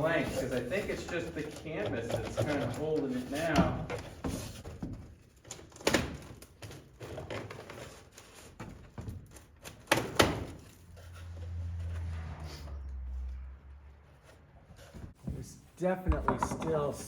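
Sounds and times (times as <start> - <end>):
knocks and taps of wood: 16.1 - 16.9.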